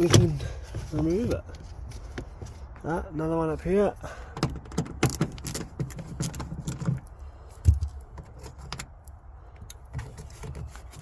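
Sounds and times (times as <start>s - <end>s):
hand tools clicking and rattling: 4.4s - 7.1s.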